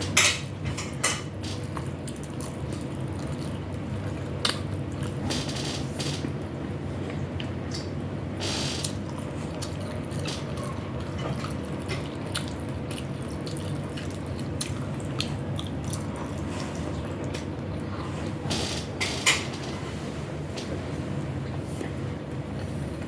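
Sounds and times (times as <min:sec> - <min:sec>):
steady low hum: 0:00.0 - 0:23.0
wet chewing clicks and smacks: 0:01.5 - 0:05.2, 0:08.8 - 0:18.1.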